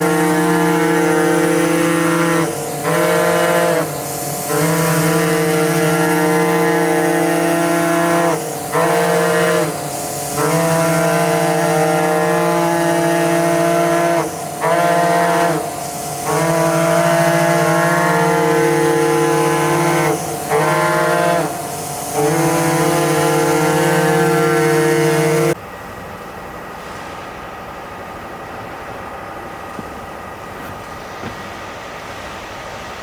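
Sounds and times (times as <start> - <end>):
cutting machine humming: 0.0 - 25.6.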